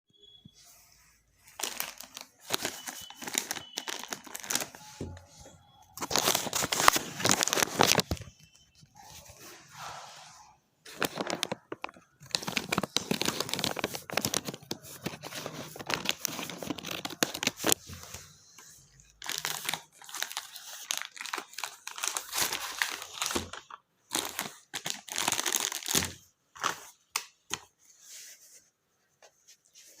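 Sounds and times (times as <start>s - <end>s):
packaging crinkling and tearing: 1.5s - 4.9s, 6.0s - 8.4s, 10.9s - 17.8s, 19.0s - 26.8s.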